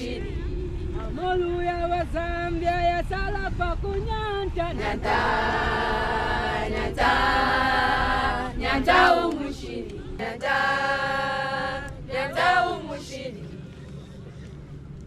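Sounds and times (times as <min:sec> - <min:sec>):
group singing without instruments: 0:00.0 - 0:00.4, 0:04.6 - 0:13.5.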